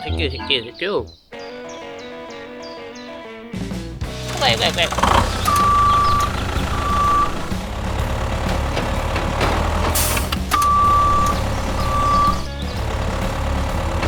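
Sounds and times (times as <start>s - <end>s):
heavy vehicle engine running: 4.0s - 14.0s
reversing beeper: 4.3s - 8.0s, 9.9s - 12.6s.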